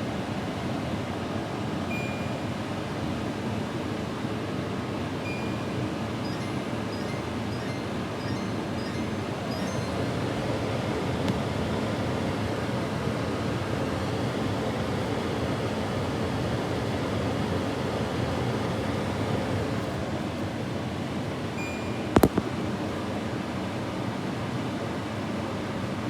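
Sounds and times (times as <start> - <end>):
air conditioner fan blowing: 0.0 - 26.0
faint short beep: 1.9 - 2.6, 5.2 - 10.2, 21.6 - 22.4
sharp clicks: 22.2 - 22.5.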